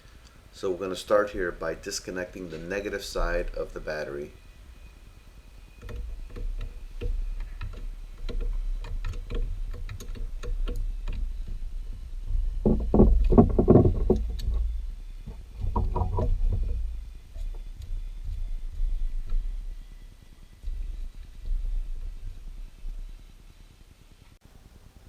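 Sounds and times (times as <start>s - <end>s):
hand tools clicking and tapping: 5.8s - 11.2s
rapid clicking bursts: 5.8s - 11.2s.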